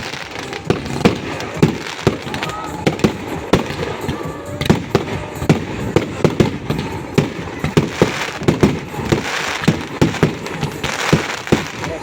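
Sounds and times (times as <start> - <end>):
fireworks bangs: 0.0 - 12.0
fireworks crackling: 0.0 - 12.0.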